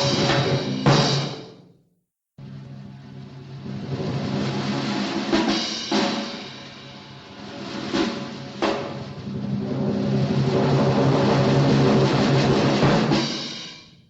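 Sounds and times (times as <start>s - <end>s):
drum-like hits: 0.0s - 1.7s, 2.4s - 14.0s.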